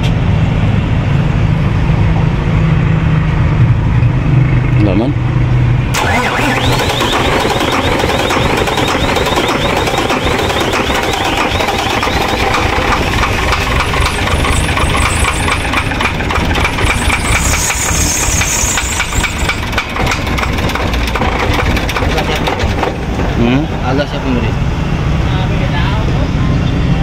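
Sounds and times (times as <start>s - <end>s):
diesel engine running unevenly: 0.0s - 27.0s
regular engine knocking: 6.0s - 23.3s.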